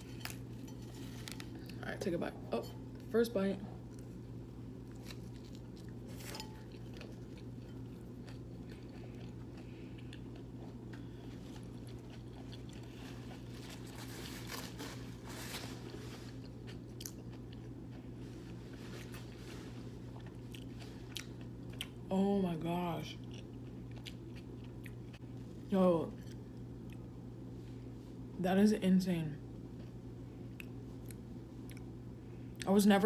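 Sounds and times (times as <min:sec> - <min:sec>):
steady low hum: 0:00.0 - 0:33.0
person chewing food: 0:03.8 - 0:15.2, 0:15.8 - 0:22.0, 0:23.2 - 0:25.3, 0:29.7 - 0:32.7.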